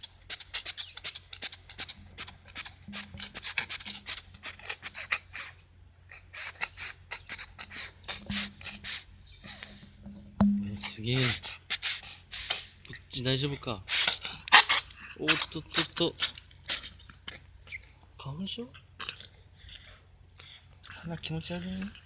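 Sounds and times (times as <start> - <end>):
cat sneezing: 6.3 - 9.0, 11.2 - 12.7, 13.9 - 17.0.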